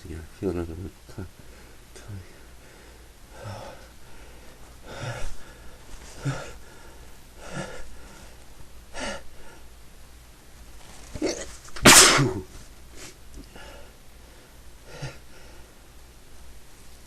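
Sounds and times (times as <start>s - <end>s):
man breathing in quickly: 1.4s - 9.7s, 12.9s - 15.8s
loud sneeze: 11.2s - 12.6s.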